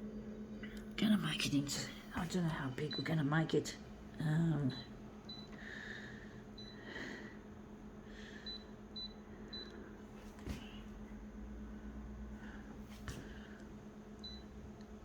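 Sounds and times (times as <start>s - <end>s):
photocopier low hum: 0.0s - 15.0s
photocopier key-press beeps: 2.6s - 3.4s, 4.7s - 5.5s, 6.6s - 6.8s, 8.4s - 9.8s, 14.2s - 14.5s.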